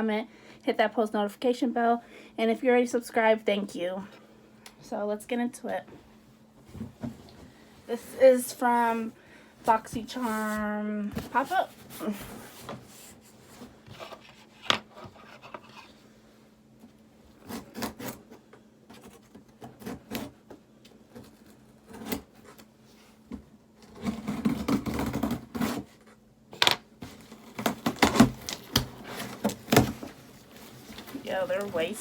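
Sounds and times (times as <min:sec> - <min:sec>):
cardboard box being handled: 0:11.2 - 0:14.5, 0:27.0 - 0:32.0
packaging rustling: 0:27.0 - 0:32.0.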